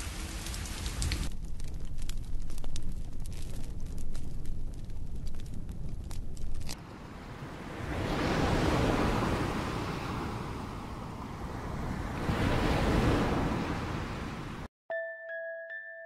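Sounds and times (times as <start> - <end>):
campfire crackle: 0.0 - 14.7
ocean waves surf: 6.8 - 14.7.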